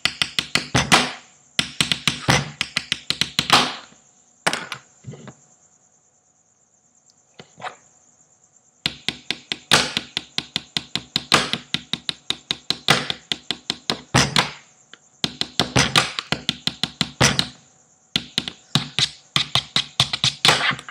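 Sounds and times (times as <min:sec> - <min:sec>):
pens tapping on hard surface: 0:00.0 - 0:03.9, 0:08.8 - 0:14.6, 0:15.2 - 0:17.6, 0:18.2 - 0:20.9.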